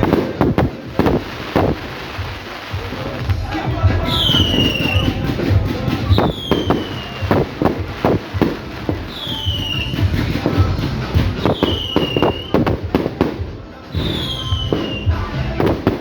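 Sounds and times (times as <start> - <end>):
fireworks bangs and crackles: 0.0 - 16.0
falling firework whistles: 4.0 - 5.4, 6.0 - 12.9, 13.9 - 15.4.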